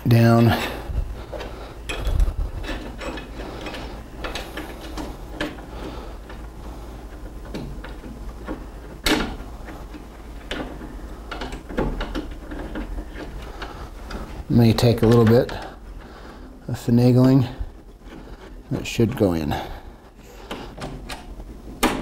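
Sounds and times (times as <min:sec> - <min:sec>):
metal hardware clicks and knocks: 0:01.4 - 0:05.6, 0:10.4 - 0:13.4, 0:14.8 - 0:15.6.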